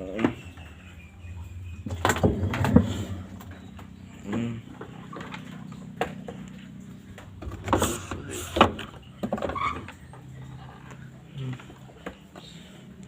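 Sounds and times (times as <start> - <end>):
steady low hum: 0.0 - 13.0
washing machine knocks and clatters: 1.8 - 3.2.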